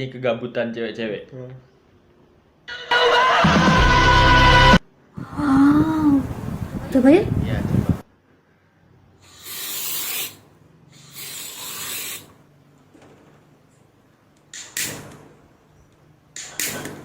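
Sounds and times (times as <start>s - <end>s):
aerosol spray can hissing: 9.2s - 10.4s, 11.0s - 12.4s
sharp clicks: 14.4s - 15.2s, 15.9s - 17.0s.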